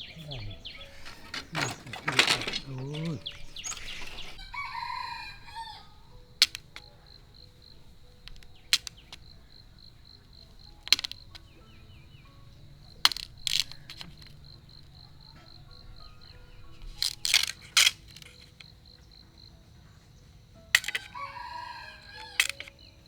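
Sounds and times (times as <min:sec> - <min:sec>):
rooster crowing: 0:00.0 - 0:06.9, 0:20.8 - 0:22.7.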